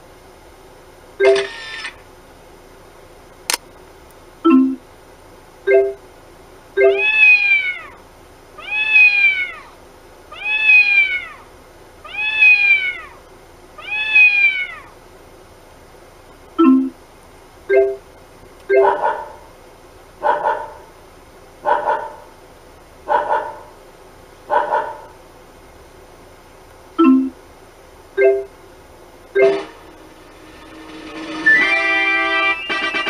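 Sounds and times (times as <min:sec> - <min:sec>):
short electronic beeps: 0:01.2 - 0:01.9, 0:16.6 - 0:17.0, 0:27.0 - 0:27.4, 0:28.2 - 0:28.5, 0:29.4 - 0:29.7
electronic cat meow: 0:06.8 - 0:08.0, 0:08.6 - 0:09.7, 0:10.3 - 0:11.4, 0:12.0 - 0:13.2, 0:13.8 - 0:14.9.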